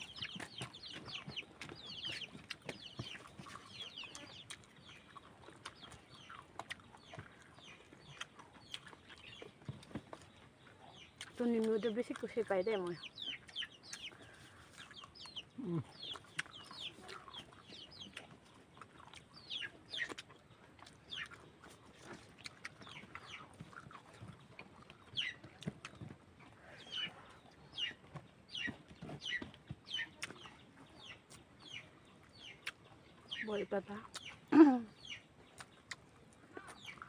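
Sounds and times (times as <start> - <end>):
birds peeping faintly: 0.0 - 37.0.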